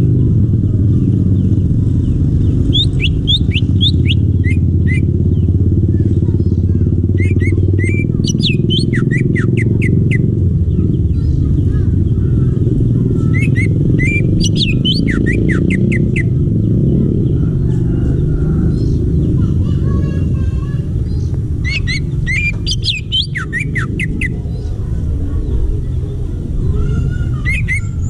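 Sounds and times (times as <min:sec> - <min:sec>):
low engine-like rumble: 0:00.0 - 0:28.0
bird whistling song: 0:01.4 - 0:05.5, 0:07.1 - 0:11.2, 0:13.1 - 0:17.0, 0:21.1 - 0:24.7, 0:26.8 - 0:28.0.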